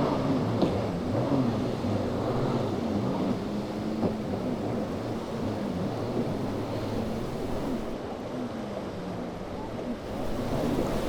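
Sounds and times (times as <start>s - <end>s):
boat engines running: 0.0s - 8.0s
wind buffeting microphone: 0.0s - 8.0s, 9.6s - 11.0s
waves washing: 0.0s - 11.0s.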